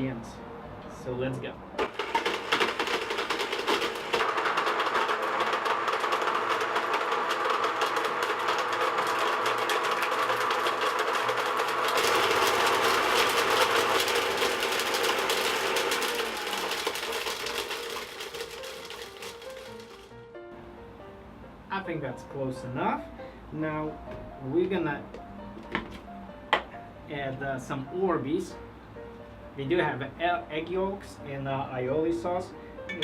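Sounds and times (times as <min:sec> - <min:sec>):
blender motor running: 0:01.8 - 0:20.1.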